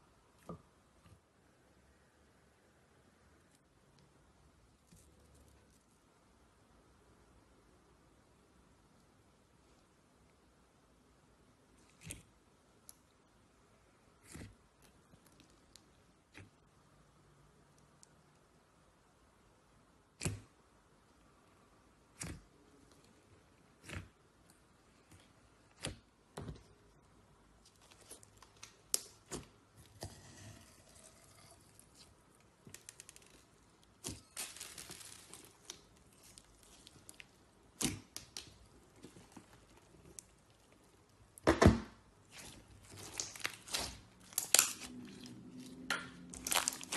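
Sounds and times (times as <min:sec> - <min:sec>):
slime popping and crackling: 0:31.1 - 0:41.1, 0:42.3 - 0:46.9.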